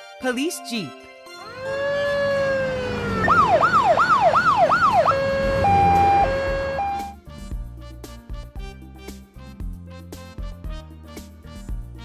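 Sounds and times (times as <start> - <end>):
emergency siren yelp: 1.4 - 7.2
two-tone siren wail: 1.4 - 7.2
bouncy children's music: 6.2 - 12.0.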